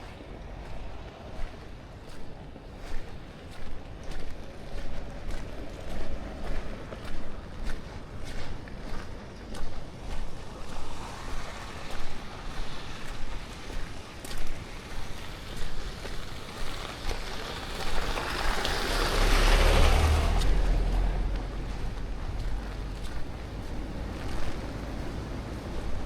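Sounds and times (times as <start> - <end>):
footsteps on a trail: 0.0 - 26.0.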